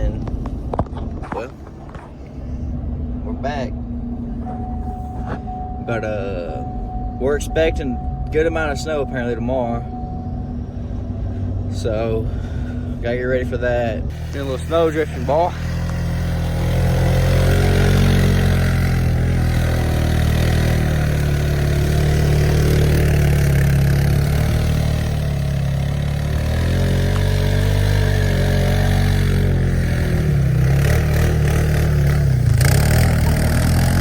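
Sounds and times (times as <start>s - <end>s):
diesel truck engine revving: 5.8s - 34.0s.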